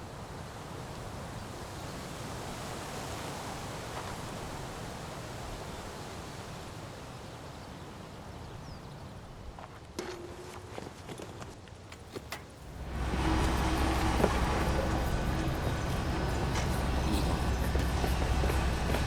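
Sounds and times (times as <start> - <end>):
wind-like hiss: 12.6 - 19.0.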